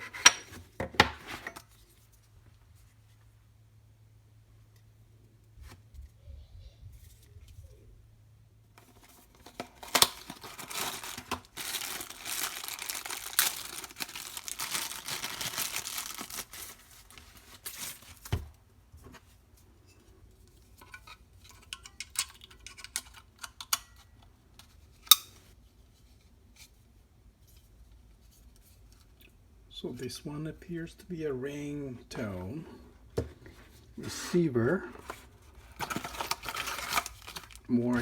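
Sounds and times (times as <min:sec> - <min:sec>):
packaging tearing and crinkling: 0:09.3 - 0:18.3, 0:35.7 - 0:37.7.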